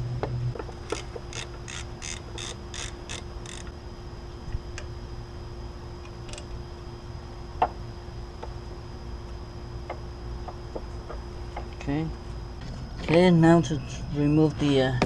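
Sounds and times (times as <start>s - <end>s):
ratchet wrench clicking: 0.8s - 3.7s.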